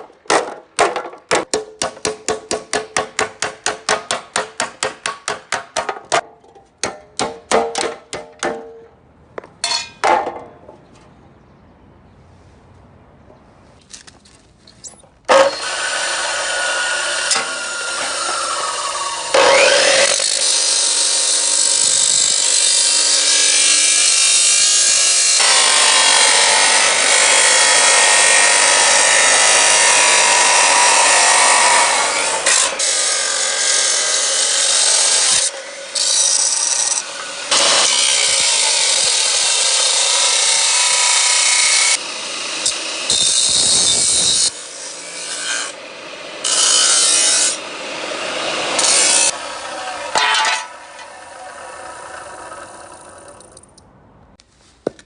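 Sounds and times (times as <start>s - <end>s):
tool sawing or grinding: 15.3s - 53.6s.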